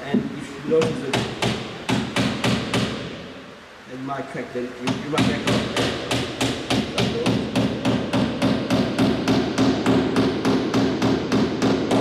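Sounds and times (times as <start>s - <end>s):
hammer driving nail into wood: 0.8s - 3.2s, 4.9s - 12.0s.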